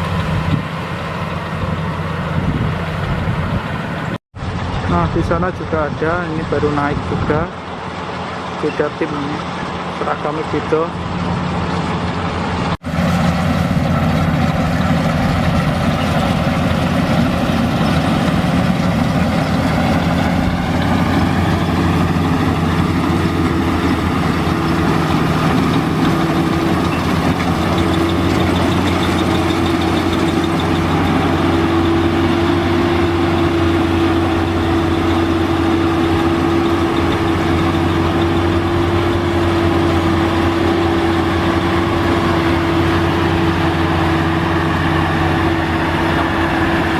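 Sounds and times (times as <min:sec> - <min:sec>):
harvester engine drone: 0:00.0 - 0:46.9.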